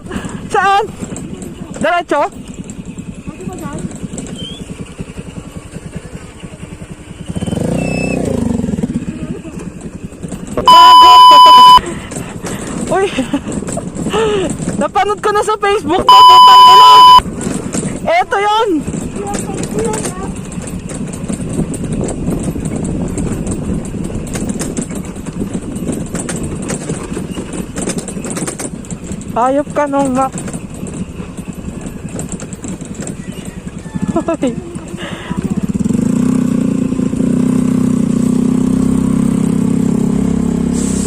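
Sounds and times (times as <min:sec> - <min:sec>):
scooter engine running: 0:00.0 - 0:40.5
knocks and rattles: 0:09.6 - 0:15.4, 0:17.3 - 0:35.9.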